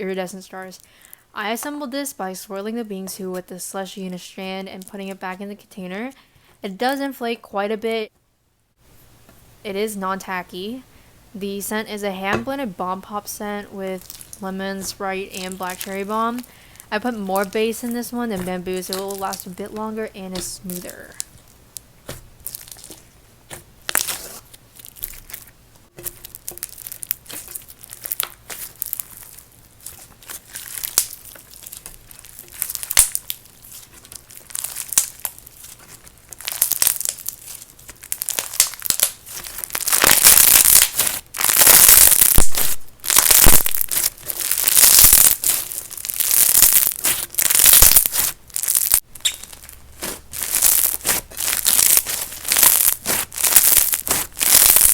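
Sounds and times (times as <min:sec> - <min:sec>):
slime squeezed crunchy crackle: 0:13.9 - 0:54.9.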